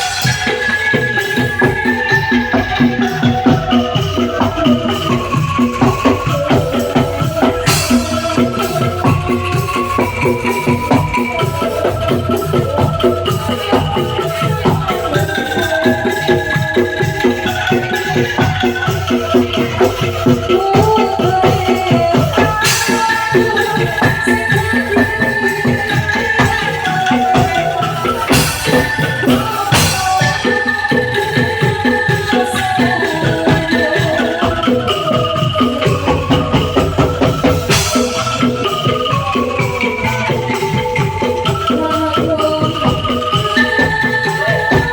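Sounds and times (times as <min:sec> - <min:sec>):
bamboo angklung ensemble: 0:00.0 - 0:44.9.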